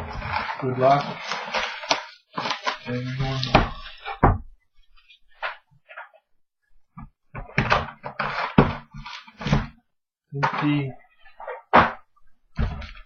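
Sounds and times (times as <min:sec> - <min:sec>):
packaging rustling: 0:00.1 - 0:04.1.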